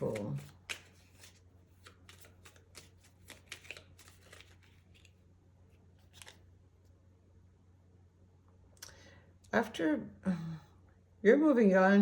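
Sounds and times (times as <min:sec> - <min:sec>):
cards flicking and tapping: 0:00.0 - 0:05.1.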